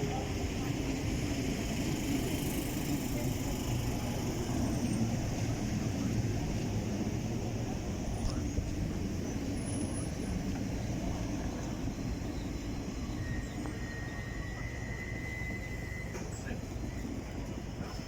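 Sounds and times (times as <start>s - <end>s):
high train squeal: 0.0s - 18.0s
train low rumble: 0.0s - 18.0s.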